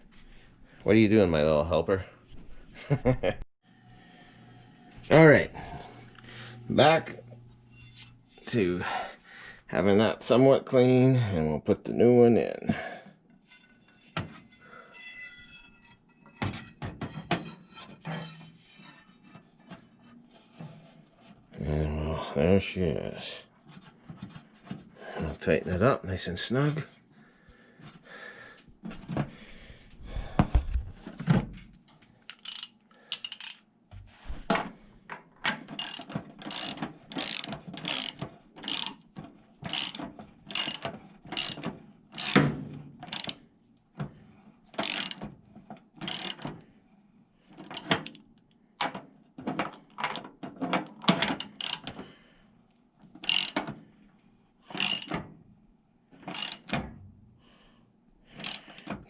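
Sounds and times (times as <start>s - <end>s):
handling and scraping: 7.3s - 8.6s, 13.2s - 21.7s, 23.0s - 25.8s
socket wrench ratchet clicking: 32.3s - 33.6s, 35.8s - 39.0s, 39.7s - 41.6s, 42.2s - 42.4s, 43.1s - 43.4s, 44.8s - 45.2s, 46.0s - 46.4s, 51.4s - 51.9s, 53.2s - 53.6s, 54.8s - 55.2s, 56.3s - 56.7s, 58.4s - 58.9s.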